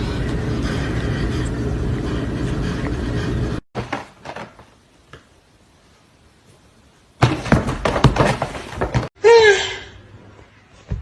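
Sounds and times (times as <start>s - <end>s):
clatter of knocks and thumps: 3.8s - 4.7s, 7.2s - 9.1s.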